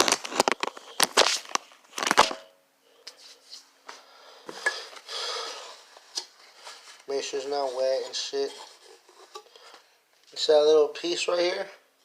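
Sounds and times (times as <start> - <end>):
rustling: 0.0 - 2.5, 4.6 - 10.5.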